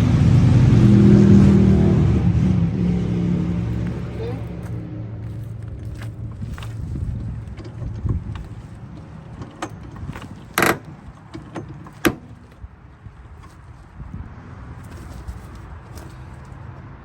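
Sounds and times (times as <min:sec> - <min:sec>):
metallic clicks and clanks of jack: 0:07.4 - 0:12.6.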